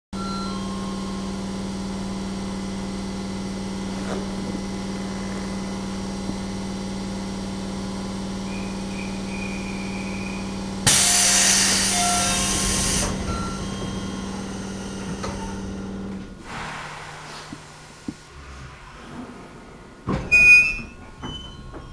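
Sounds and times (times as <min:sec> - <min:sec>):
train equipment humming: 0:00.2 - 0:21.9
compressed air venting hiss: 0:10.8 - 0:13.2, 0:16.4 - 0:18.3.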